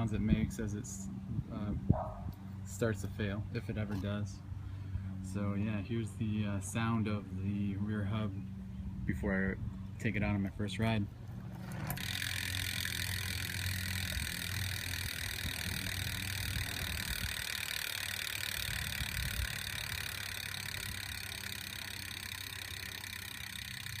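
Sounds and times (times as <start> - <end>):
bicycle freewheel buzzing: 11.2 - 24.0.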